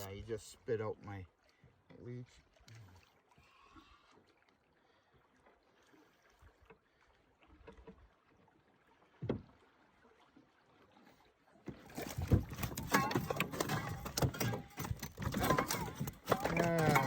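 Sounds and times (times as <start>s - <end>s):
knocks and rustles from canoe: 9.1s - 9.7s, 11.6s - 17.0s
hollow thump against hull: 9.2s - 9.6s, 11.6s - 17.0s.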